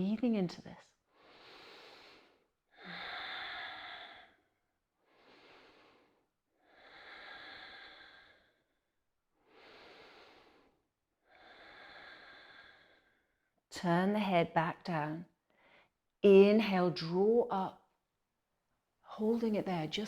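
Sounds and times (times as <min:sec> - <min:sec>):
woman breathing deeply: 0:01.2 - 0:08.8, 0:09.4 - 0:13.3.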